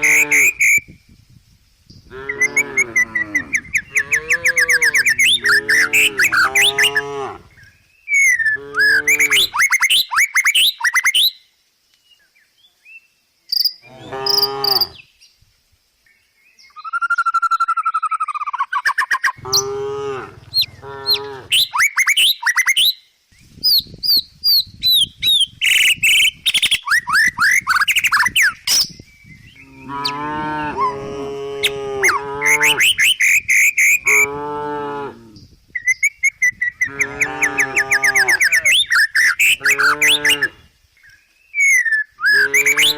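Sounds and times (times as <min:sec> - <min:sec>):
cows mooing: 0:00.0 - 0:00.6, 0:02.1 - 0:07.5, 0:08.6 - 0:09.5, 0:19.4 - 0:21.6, 0:29.6 - 0:32.9, 0:34.0 - 0:35.4, 0:36.9 - 0:38.9, 0:39.6 - 0:40.6, 0:42.3 - 0:42.9
birds chirping: 0:00.0 - 0:00.9, 0:02.0 - 0:11.2, 0:16.1 - 0:22.8, 0:25.4 - 0:30.4, 0:32.4 - 0:34.3, 0:35.2 - 0:42.9.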